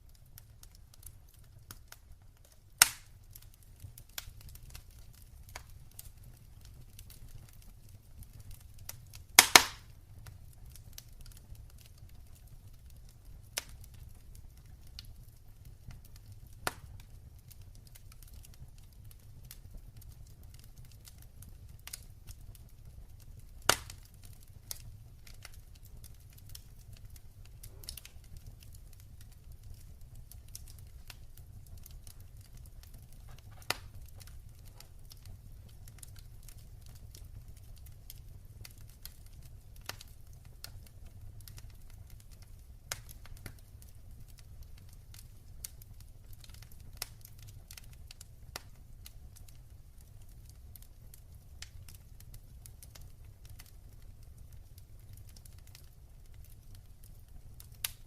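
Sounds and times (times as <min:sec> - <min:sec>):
fire crackling ticks: 0:00.0 - 0:58.0
low steady fire rumble: 0:00.0 - 0:58.0
sharp fire pops: 0:02.8 - 0:06.1, 0:08.9 - 0:10.0, 0:16.5 - 0:17.0, 0:23.6 - 0:24.1, 0:26.5 - 0:39.2, 0:57.8 - 0:58.0.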